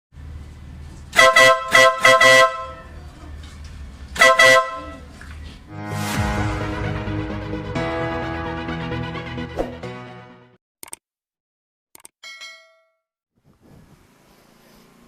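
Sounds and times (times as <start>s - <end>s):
scooter horn honking: 1.2s - 3.0s, 4.2s - 5.1s
music: 5.7s - 10.6s.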